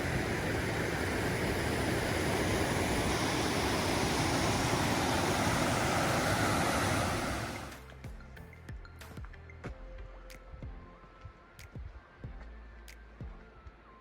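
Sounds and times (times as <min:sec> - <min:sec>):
creek water rushing: 0:00.0 - 0:07.8.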